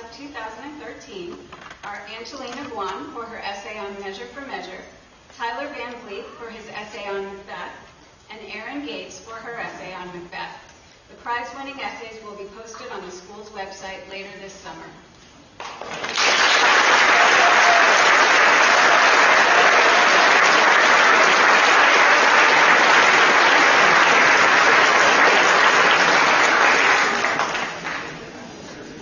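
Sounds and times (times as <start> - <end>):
audience applauding: 15.6 - 28.5.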